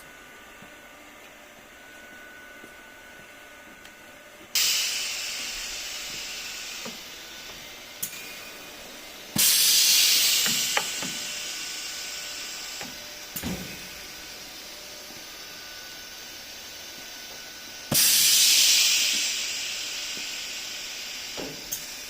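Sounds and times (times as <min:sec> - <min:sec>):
compressed air hissing: 0:04.6 - 0:22.0.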